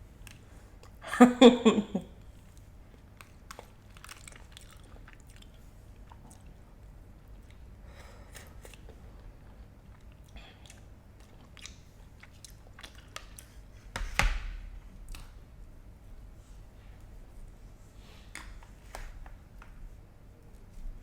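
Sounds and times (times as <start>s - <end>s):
chewing and biting food: 2.4s - 7.7s, 8.4s - 13.7s.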